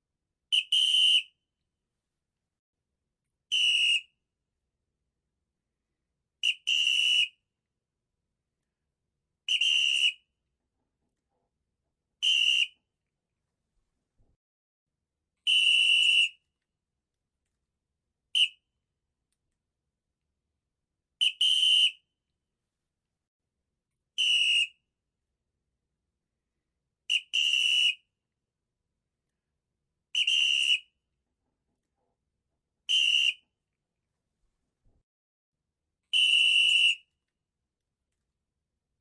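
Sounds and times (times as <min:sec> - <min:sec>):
shrill whistle blasts: 0:00.5 - 0:01.5, 0:03.4 - 0:04.3, 0:06.4 - 0:07.5, 0:09.4 - 0:10.4, 0:12.2 - 0:12.9, 0:15.4 - 0:16.5, 0:18.3 - 0:18.7, 0:21.2 - 0:22.2, 0:24.1 - 0:25.0, 0:27.0 - 0:28.2, 0:30.1 - 0:31.1, 0:32.8 - 0:33.6, 0:36.1 - 0:37.2.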